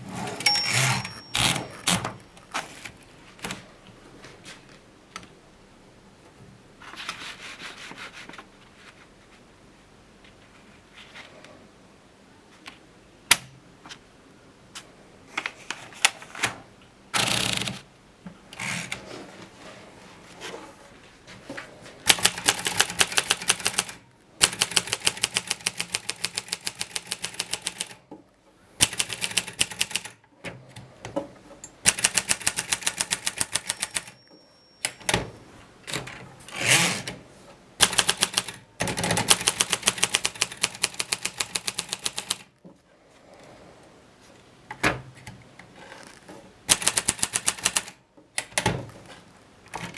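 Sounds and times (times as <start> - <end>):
typewriter carriage sliding: 0.0 - 3.0
brief ringing tone: 0.4 - 2.4, 33.7 - 35.0
typewriter key strikes: 0.4 - 2.6, 31.9 - 34.2, 37.8 - 42.4, 46.7 - 47.9.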